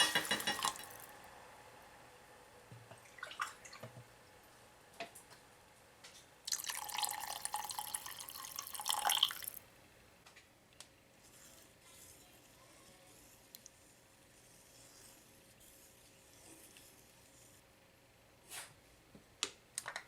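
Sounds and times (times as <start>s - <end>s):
tap water running into sink: 0.0s - 1.0s.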